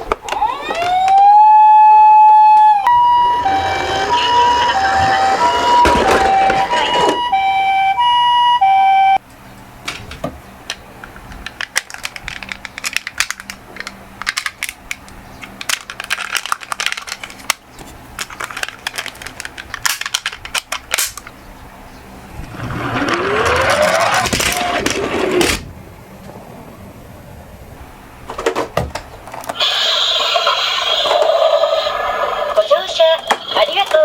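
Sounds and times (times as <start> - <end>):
toy siren alternating two tones: 0.3 - 9.2
rising electronic tone: 0.4 - 9.2
toy cars clicking and tapping: 11.4 - 17.6.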